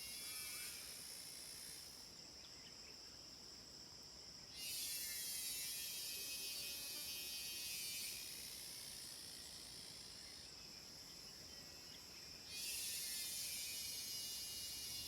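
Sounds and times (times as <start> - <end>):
cicadas calling shrilly: 0.0 - 3.2, 4.4 - 15.0
high insect drone: 0.0 - 15.0.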